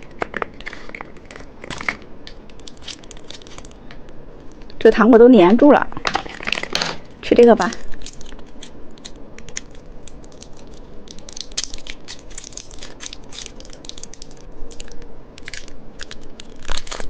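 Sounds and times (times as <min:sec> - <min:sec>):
candy being crunched: 0:00.0 - 0:03.8, 0:07.7 - 0:17.0.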